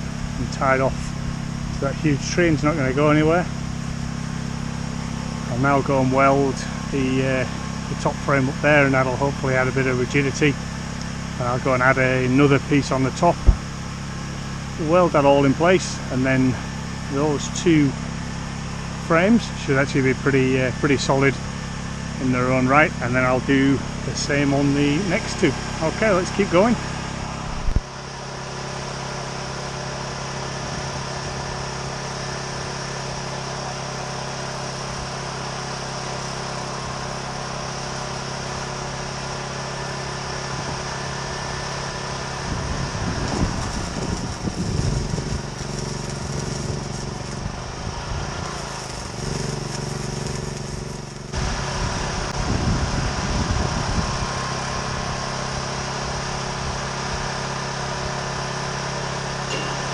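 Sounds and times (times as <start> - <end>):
small engine running: 0.0 - 59.9
low knocks and rumbles: 13.4 - 13.8
hissing: 43.2 - 51.4.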